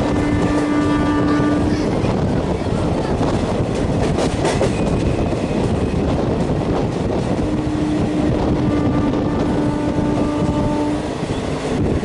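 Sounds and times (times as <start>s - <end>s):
train horn long note: 0.0s - 1.9s, 7.4s - 11.2s
rumble of passing train: 0.0s - 12.0s.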